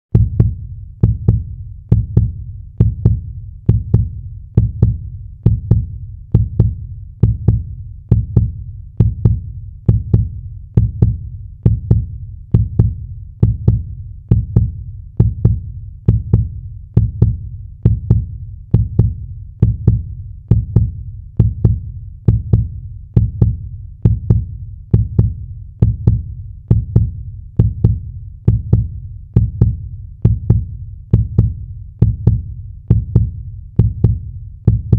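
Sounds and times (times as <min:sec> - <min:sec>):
heartbeat thumps: 0:00.2 - 0:34.9.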